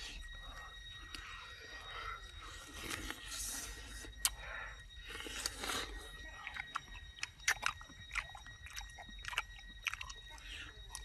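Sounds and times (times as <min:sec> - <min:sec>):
person chewing and biting: 0:05.1 - 0:11.0.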